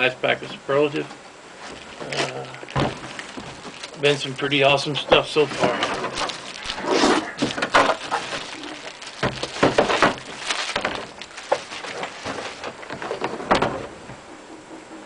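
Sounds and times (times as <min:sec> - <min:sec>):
card pack wrapper crinkling: 0:01.6 - 0:13.0.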